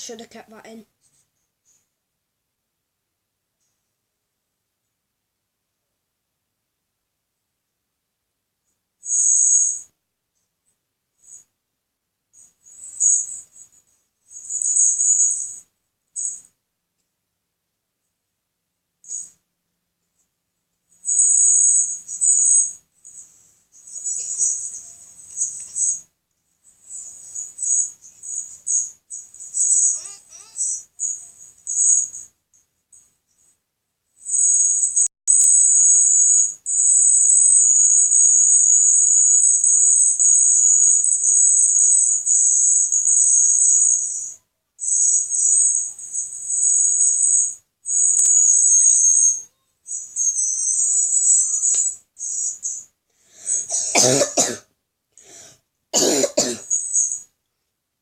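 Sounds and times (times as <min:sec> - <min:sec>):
insects trilling: 0:14.4 - 0:15.6, 0:21.0 - 0:23.2, 0:23.8 - 0:26.0, 0:26.9 - 0:32.3, 0:34.3 - 0:54.6, 0:56.0 - 0:57.2
loud cough: 0:53.7 - 0:54.7, 0:56.0 - 0:56.7.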